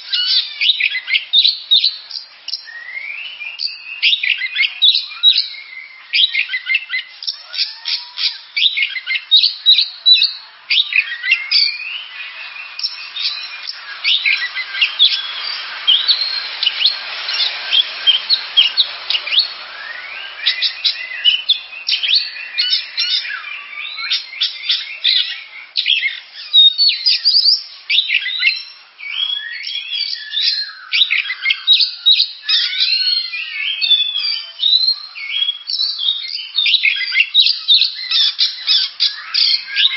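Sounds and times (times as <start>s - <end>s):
bird singing varied song: 0.0s - 39.9s
hiss: 11.5s - 23.4s.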